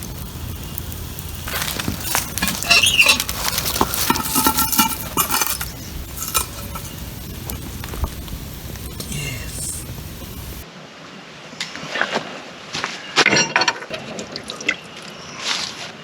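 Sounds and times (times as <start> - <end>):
cookware clinking and scraping: 1.5 - 7.0.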